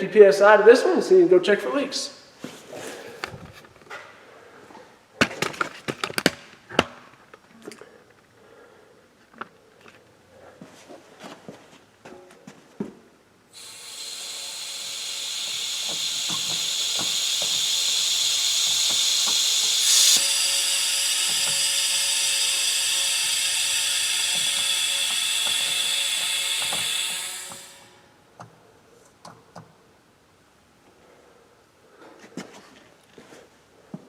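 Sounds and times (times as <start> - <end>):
compressed air hissing: 13.5 - 28.1.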